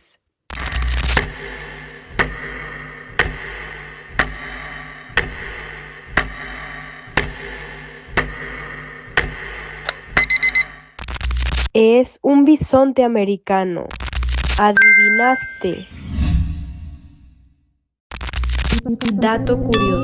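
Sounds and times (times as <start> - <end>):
steady low hum: 0.6 - 11.0
quick beeps: 10.2 - 10.7, 14.8 - 15.9
countdown timer ticking: 14.8 - 15.8.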